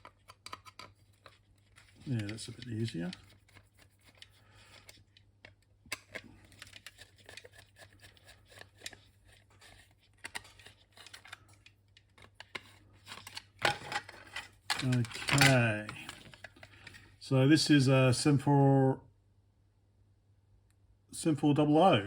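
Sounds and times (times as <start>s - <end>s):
screwdriver clicks and scrapes: 0.0s - 15.4s
plastic case being handled: 0.0s - 17.2s.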